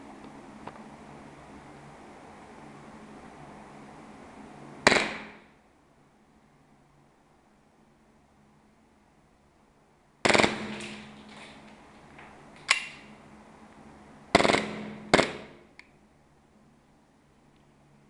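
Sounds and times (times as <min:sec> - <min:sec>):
airsoft pistol firing: 0:04.8 - 0:05.5, 0:10.2 - 0:11.2, 0:14.3 - 0:15.7.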